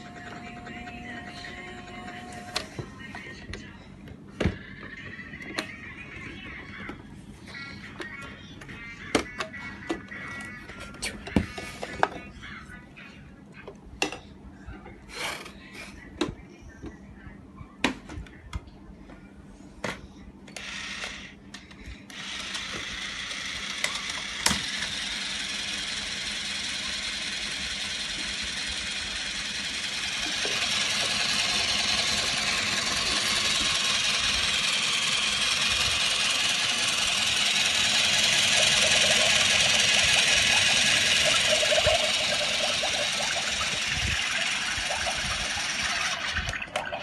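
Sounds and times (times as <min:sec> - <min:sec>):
small toy motor running: 0:00.0 - 0:02.7, 0:20.6 - 0:21.4, 0:22.1 - 0:47.0.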